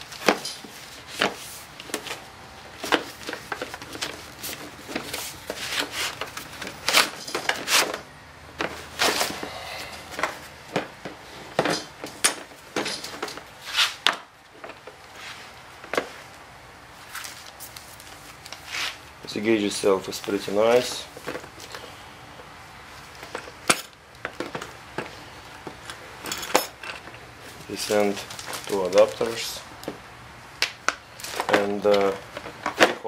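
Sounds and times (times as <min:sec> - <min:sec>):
packaging being unpacked: 0:27.7 - 0:29.5.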